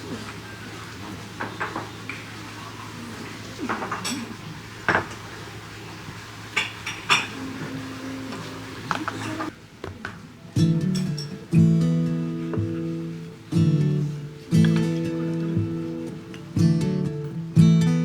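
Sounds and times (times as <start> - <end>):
dishes and cutlery clinking: 1.4 - 2.3, 3.6 - 5.4, 6.6 - 9.5, 10.8 - 11.6, 12.4 - 16.5.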